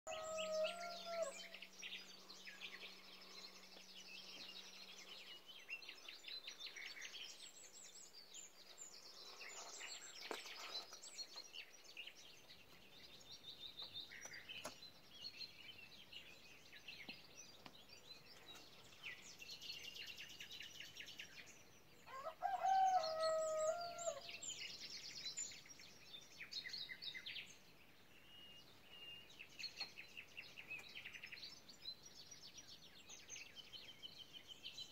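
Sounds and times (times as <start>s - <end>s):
songbirds chirping and trilling: 0.0s - 34.9s
rooster crowing: 0.1s - 1.5s, 22.1s - 24.2s.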